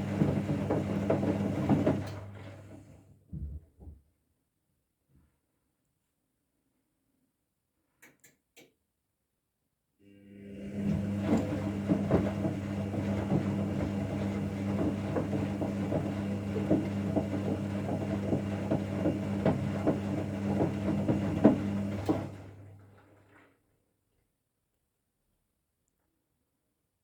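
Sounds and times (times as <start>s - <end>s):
washing machine motor hum: 0.0s - 3.1s, 10.0s - 23.4s.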